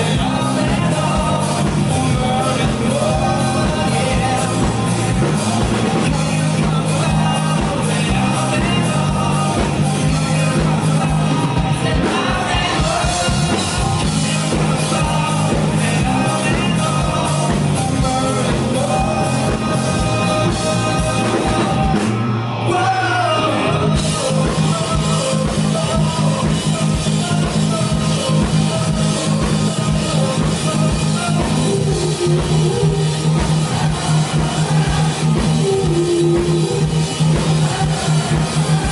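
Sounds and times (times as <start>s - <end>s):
person singing: 0.0s - 38.9s
rock band playing live: 0.0s - 38.9s.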